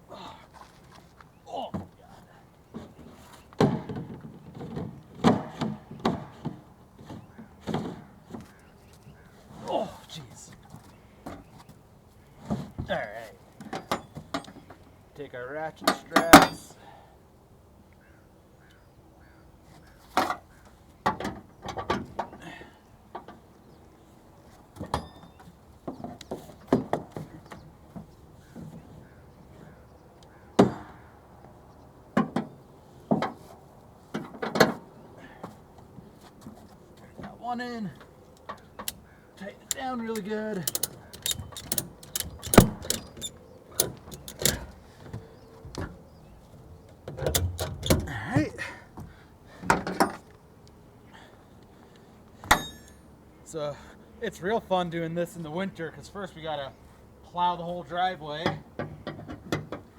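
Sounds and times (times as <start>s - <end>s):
ratchet strap metal clicks: 39.6s - 44.8s.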